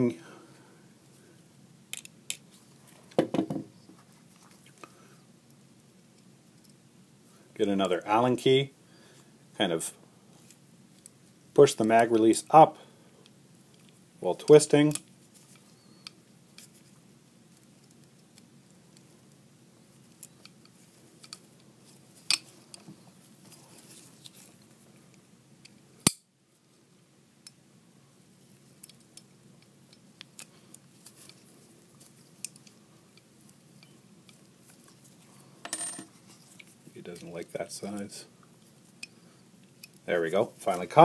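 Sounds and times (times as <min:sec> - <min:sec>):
pistol parts being handled: 0:01.9 - 0:03.7, 0:19.9 - 0:26.2, 0:28.5 - 0:37.3.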